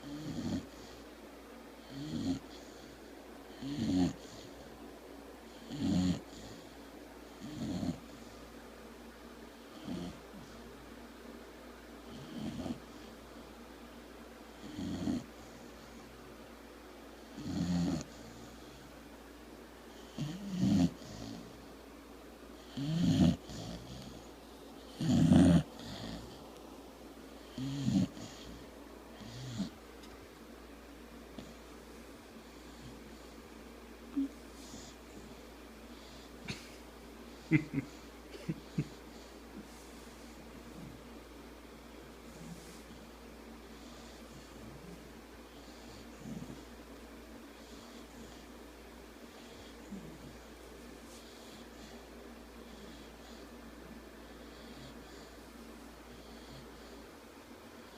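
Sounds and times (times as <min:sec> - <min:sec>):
dog snoring: 0:00.0 - 0:01.0, 0:01.8 - 0:04.7, 0:05.5 - 0:08.4, 0:09.7 - 0:10.6, 0:12.0 - 0:13.2, 0:14.5 - 0:16.1, 0:17.2 - 0:18.9, 0:19.9 - 0:21.7, 0:22.6 - 0:26.4, 0:27.4 - 0:29.8, 0:32.5 - 0:33.4, 0:43.7 - 0:46.8, 0:47.5 - 0:48.5, 0:49.3 - 0:52.0, 0:52.6 - 0:53.5, 0:54.2 - 0:55.4, 0:56.1 - 0:57.0.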